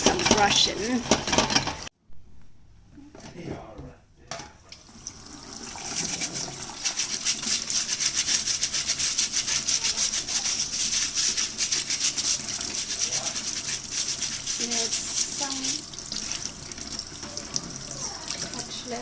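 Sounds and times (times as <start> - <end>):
bristle brush scrubbing: 5.7 - 19.0.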